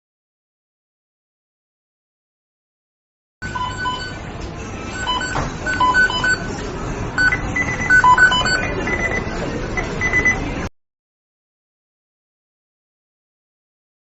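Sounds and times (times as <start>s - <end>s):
electronic timer beeps: 3.4s - 4.2s, 4.9s - 6.6s, 7.2s - 10.4s
steady low background noise: 3.4s - 10.7s.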